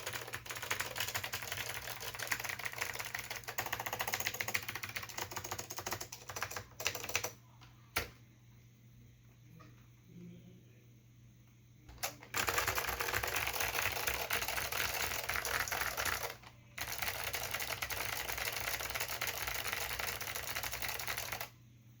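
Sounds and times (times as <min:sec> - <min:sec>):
fast typing on clicky keyboard: 0:00.0 - 0:07.4, 0:12.0 - 0:21.6.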